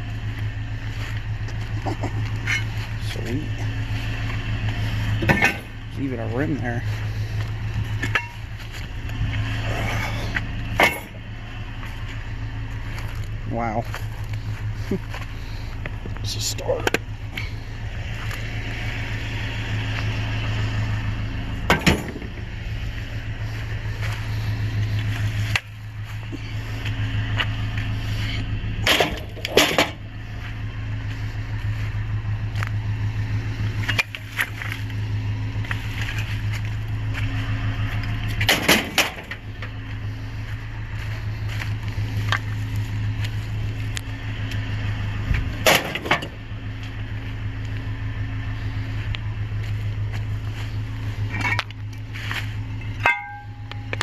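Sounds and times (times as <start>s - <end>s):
vehicle engine drone: 0.0s - 54.0s
sharp knocks and clatters: 21.6s - 22.4s, 28.8s - 30.0s, 38.3s - 39.4s, 45.4s - 46.4s.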